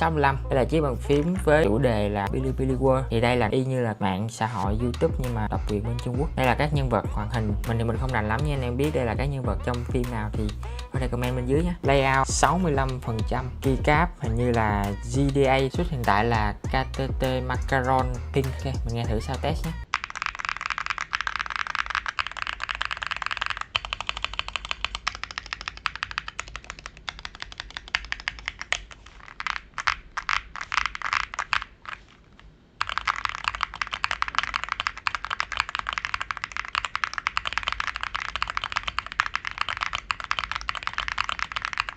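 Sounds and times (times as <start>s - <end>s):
mechanical keyboard typing: 19.9s - 41.9s.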